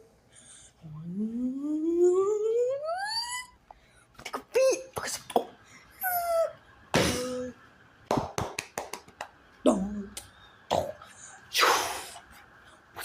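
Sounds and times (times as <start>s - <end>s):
long hissing burst: 11.2s - 12.3s.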